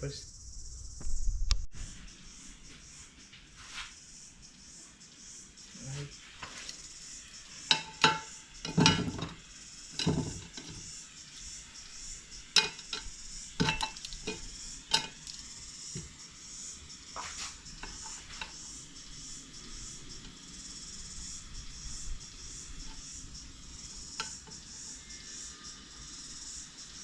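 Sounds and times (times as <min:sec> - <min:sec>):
steady high hiss: 0:00.0 - 0:27.0
metallic clicks and clinks of tools: 0:12.5 - 0:15.5.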